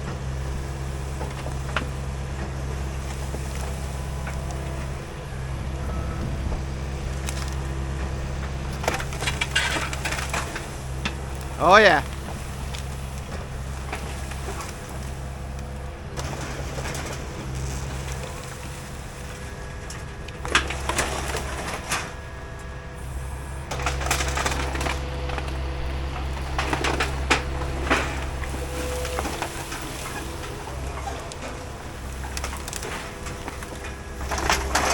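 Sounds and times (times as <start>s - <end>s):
heavy machinery engine drone: 0.0s - 34.9s
clatters and scrapes: 8.8s - 10.8s.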